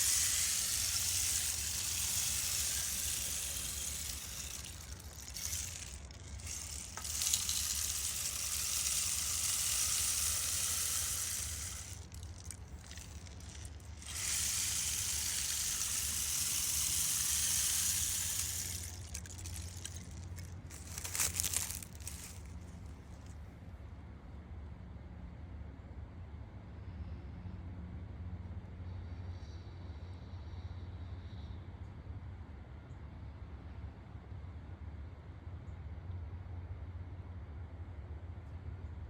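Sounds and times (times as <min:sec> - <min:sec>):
rainstick trickling hiss: 0:00.0 - 0:22.8
small rattles: 0:00.0 - 0:23.4.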